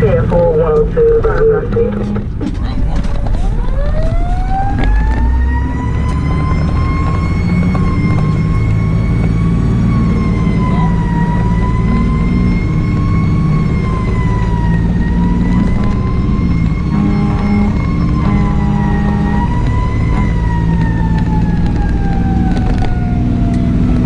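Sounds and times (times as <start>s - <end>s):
fire engine siren: 0.0s - 2.3s, 3.0s - 24.0s
truck engine running: 0.0s - 24.0s.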